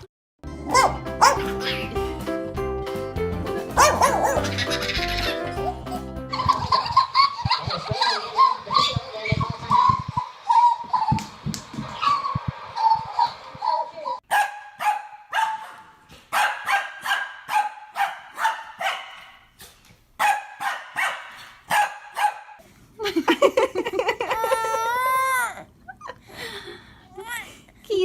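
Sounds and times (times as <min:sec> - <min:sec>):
dog barking: 0:00.7 - 0:01.6, 0:03.8 - 0:04.6, 0:14.3 - 0:19.5, 0:20.2 - 0:22.6.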